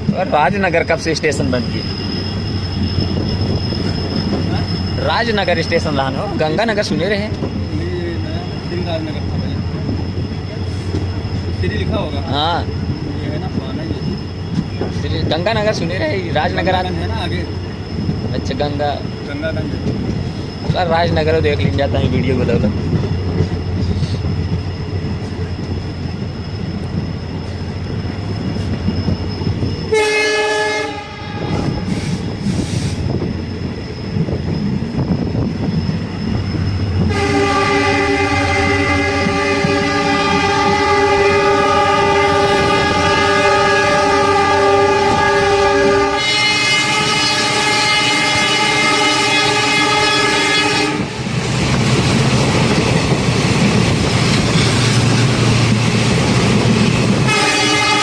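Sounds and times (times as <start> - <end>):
train wheels rumbling on rail: 0.0 - 58.0
train horn: 29.9 - 31.8, 37.1 - 51.1, 57.3 - 58.0.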